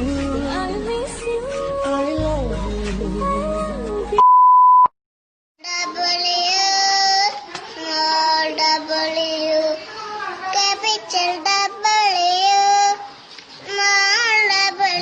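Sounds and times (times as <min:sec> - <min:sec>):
song playing: 0:00.0 - 0:04.2
short steady beep: 0:04.2 - 0:04.9
childlike voice singing: 0:05.6 - 0:15.0.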